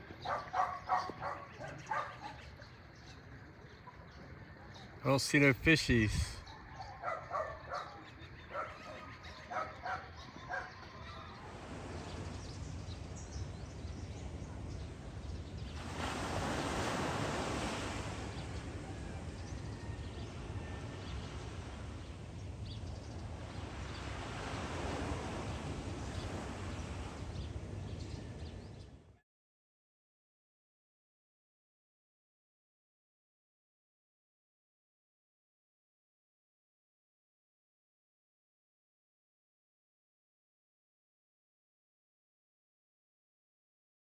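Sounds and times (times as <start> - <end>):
wind: 0.0 - 29.2
dog barking: 0.1 - 2.5, 6.5 - 11.5
waves rushing: 5.1 - 6.4, 10.5 - 28.8.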